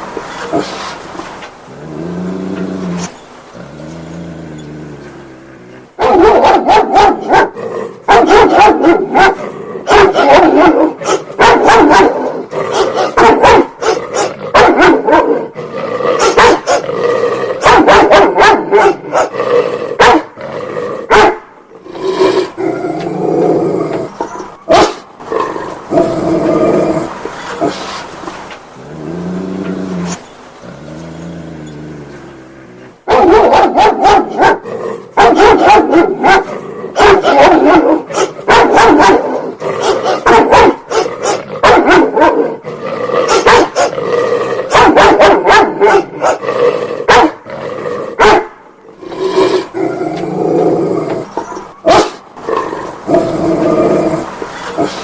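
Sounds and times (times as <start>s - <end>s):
dog growling: 0.2s - 48.3s, 48.9s - 55.0s
dog barking: 6.0s - 15.5s, 16.1s - 16.9s, 17.6s - 19.4s, 20.0s - 20.4s, 21.0s - 21.6s, 24.1s - 25.1s, 33.0s - 42.6s, 43.2s - 44.0s, 44.6s - 47.4s, 48.2s - 48.6s, 51.3s - 53.4s.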